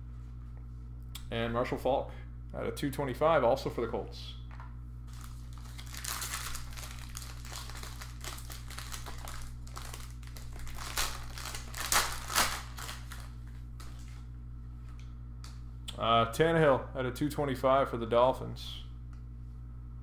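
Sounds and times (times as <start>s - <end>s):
plastic and paper crinkling: 5.1s - 14.3s.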